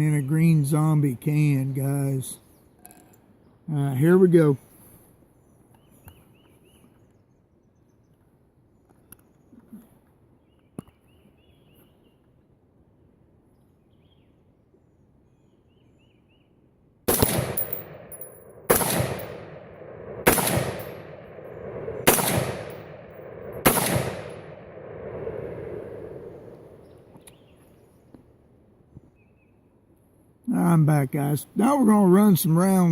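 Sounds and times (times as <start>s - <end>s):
rifle shots with long echo: 17.1s - 27.1s.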